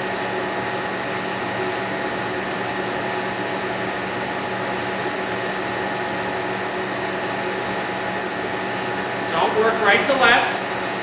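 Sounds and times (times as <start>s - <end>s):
steady machine drone: 3.2s - 11.0s.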